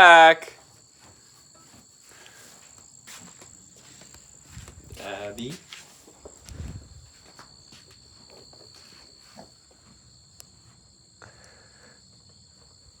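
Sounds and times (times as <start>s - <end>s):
high-pitched insect trill: 0.0s - 13.0s
soft footsteps: 0.6s - 10.9s.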